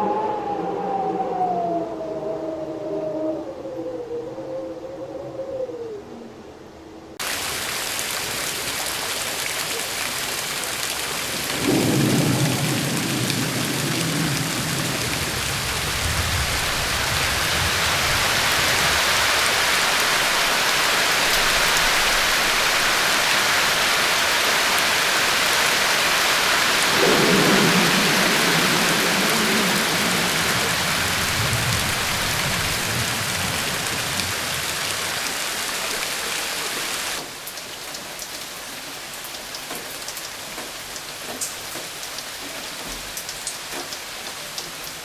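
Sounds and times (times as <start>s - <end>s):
heavy rain: 7.2s - 45.0s
low thunder rumble: 11.3s - 20.3s, 26.6s - 36.2s.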